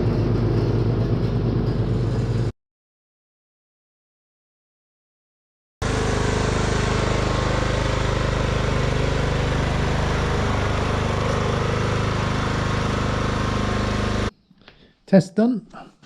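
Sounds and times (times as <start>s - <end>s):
ride-on lawn mower engine running: 0.0s - 2.5s, 5.8s - 14.3s.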